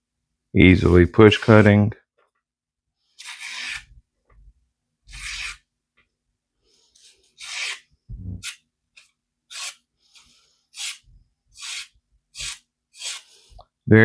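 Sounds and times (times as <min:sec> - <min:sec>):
knife cutting through paper: 0:03.2 - 0:03.9, 0:05.1 - 0:05.6, 0:07.4 - 0:11.0, 0:11.6 - 0:13.4
dull thump: 0:08.1 - 0:08.4.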